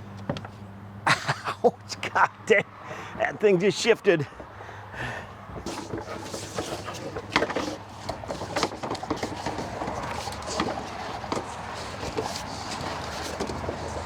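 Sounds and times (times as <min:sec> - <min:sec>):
hose fittings knocking and rattling: 0:05.6 - 0:14.0.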